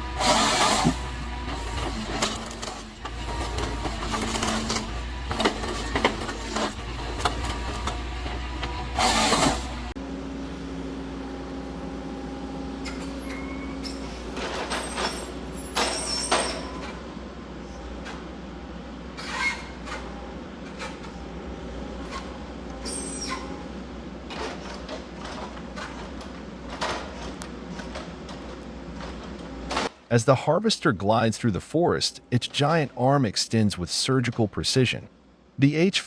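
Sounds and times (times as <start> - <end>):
machinery low drone: 0.0 - 14.2
hissing bursts: 0.1 - 1.2.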